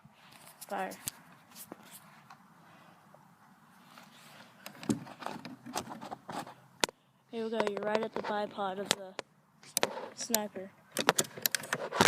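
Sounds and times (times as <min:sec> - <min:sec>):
rifle mechanism clicks and rattles: 0:09.7 - 0:12.0.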